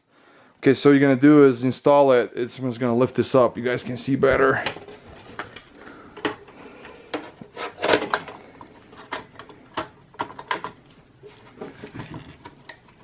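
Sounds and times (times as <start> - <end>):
plastic and metal parts clicking: 4.6 - 10.8.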